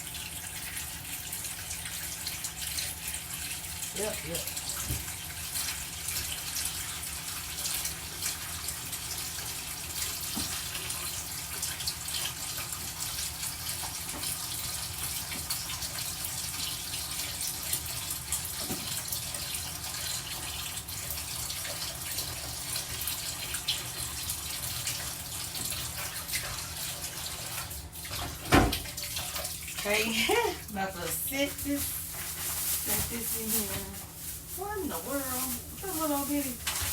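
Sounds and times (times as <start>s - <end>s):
tap water running into sink: 0.0s - 34.0s, 34.6s - 36.9s.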